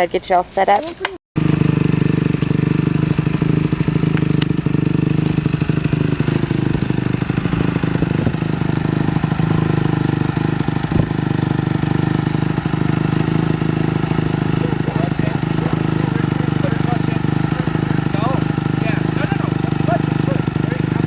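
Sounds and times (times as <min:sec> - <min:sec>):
dirt bike engine running: 0:01.4 - 0:21.0.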